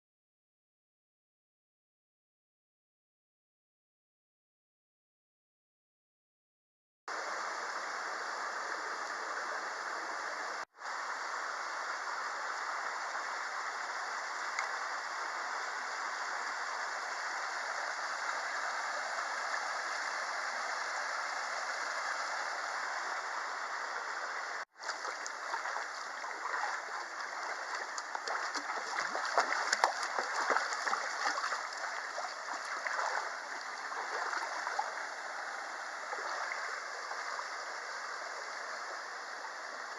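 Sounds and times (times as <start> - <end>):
stream rushing over rocks: 7.1 - 39.9
wading splashes: 24.7 - 37.4.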